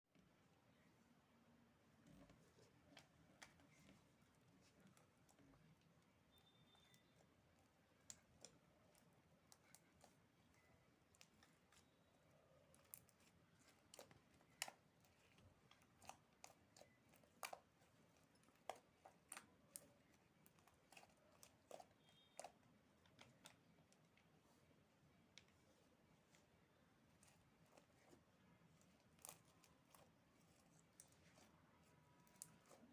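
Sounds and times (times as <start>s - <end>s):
slime squishing with clicks and pops: 4.9s - 24.3s, 28.7s - 32.9s.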